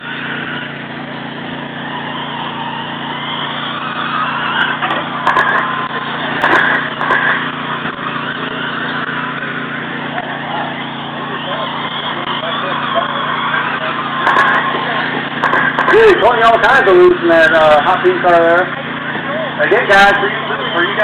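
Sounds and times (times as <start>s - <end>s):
toy truck motor whine: 0.0s - 21.0s
sharp clacks: 4.4s - 8.0s, 14.2s - 16.2s.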